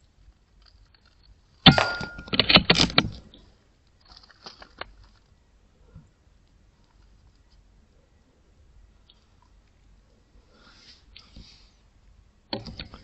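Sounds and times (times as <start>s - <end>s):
short metallic ring: 1.7s - 2.4s.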